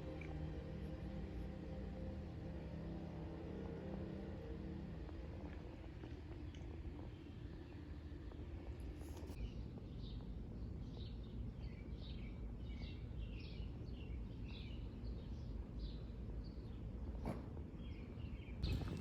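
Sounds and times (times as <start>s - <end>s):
steady low rumble: 0.0s - 12.6s, 18.6s - 19.0s
bird chirping: 17.9s - 19.0s.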